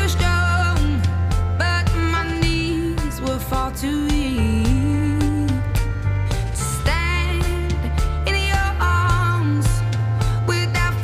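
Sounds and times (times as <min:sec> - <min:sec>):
pop song: 0:00.0 - 0:11.0.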